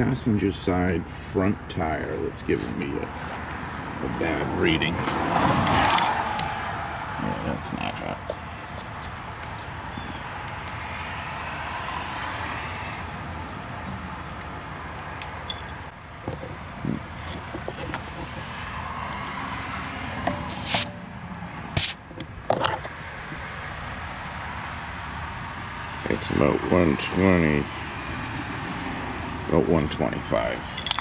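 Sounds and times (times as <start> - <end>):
vehicle rumble: 0.0 - 31.0
short sharp hisses or clicks: 20.4 - 20.9, 21.8 - 22.0.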